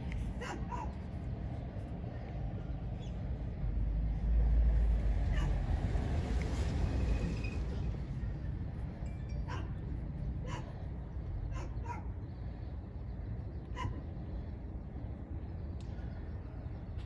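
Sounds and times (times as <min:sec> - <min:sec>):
steady low rumble: 0:00.0 - 0:17.0
dog barking: 0:00.4 - 0:01.0, 0:09.5 - 0:09.7, 0:10.4 - 0:10.7, 0:11.5 - 0:12.1, 0:13.7 - 0:14.0.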